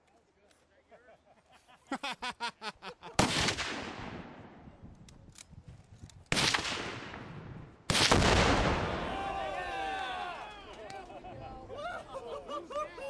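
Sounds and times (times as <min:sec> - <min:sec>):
gunshots with rolling echo: 0:03.2 - 0:04.6, 0:06.3 - 0:09.2.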